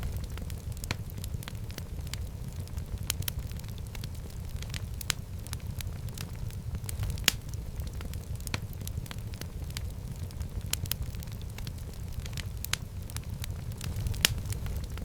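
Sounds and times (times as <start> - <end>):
wood fire crackling: 0.0 - 15.0.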